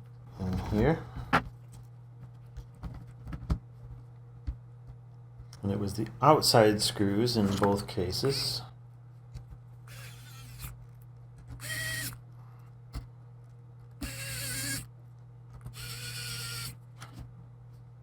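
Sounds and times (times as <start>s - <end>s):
electric screwdriver whining: 9.9s - 10.7s, 11.6s - 12.2s, 14.0s - 14.9s, 15.7s - 16.8s.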